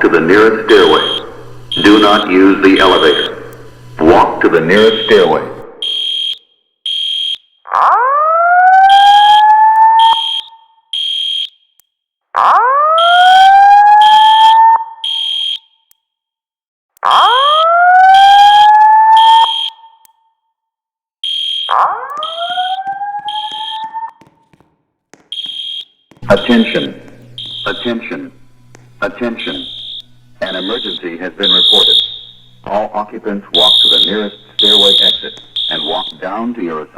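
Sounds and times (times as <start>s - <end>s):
rising whoop alarm tone: 21.7s - 24.1s.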